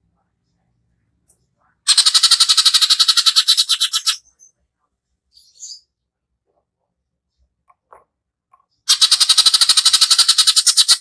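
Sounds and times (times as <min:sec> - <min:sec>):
bird harsh rapid trill: 0:01.9 - 0:04.2, 0:08.9 - 0:11.0.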